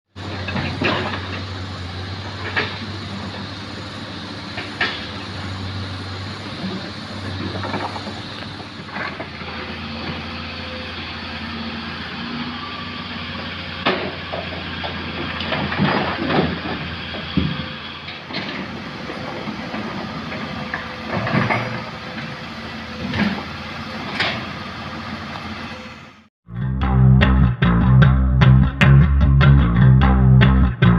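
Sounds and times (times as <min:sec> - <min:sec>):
heavy diesel machinery droning: 0:00.1 - 0:30.9
rocks clanking into dump truck: 0:00.2 - 0:01.7, 0:06.5 - 0:10.3, 0:13.8 - 0:22.4.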